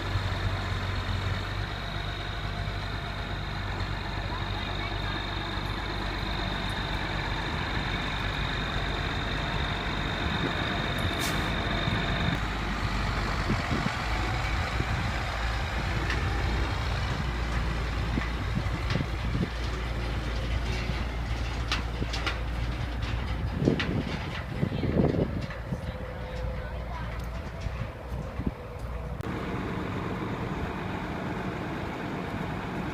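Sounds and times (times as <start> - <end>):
truck engine rumbling: 0.0 - 32.9
sharp knocks and rattles: 17.2 - 25.7.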